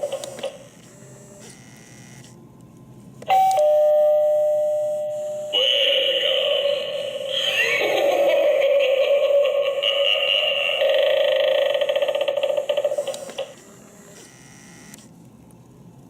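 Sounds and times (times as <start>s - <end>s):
two-note electronic doorbell chime: 3.3s - 5.3s.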